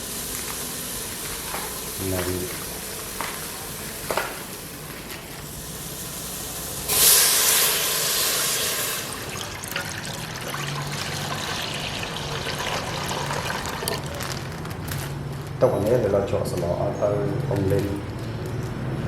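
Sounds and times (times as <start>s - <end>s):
liquid sizzling in a hot pan: 0.0s - 14.2s.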